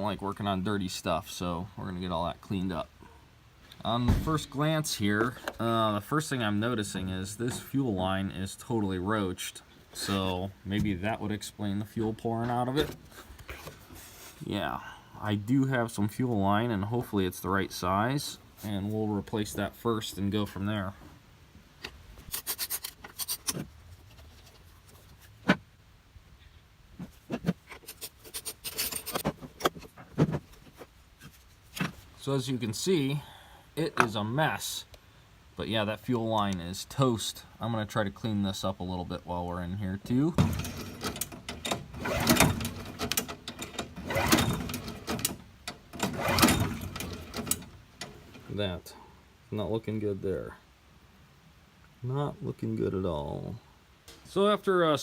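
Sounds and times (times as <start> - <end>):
tools scraping and clicking: 21.8 - 25.1, 27.0 - 30.4
handling clicks and knocks: 27.0 - 30.9, 40.4 - 48.5.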